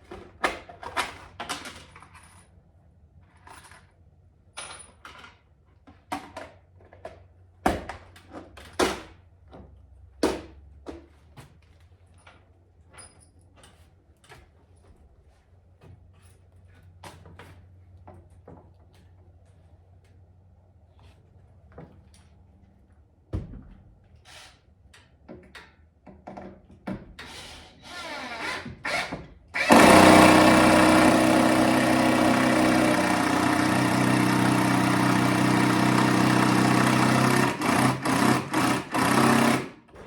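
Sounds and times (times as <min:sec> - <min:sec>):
power drill running: 0:27.8 - 0:39.8.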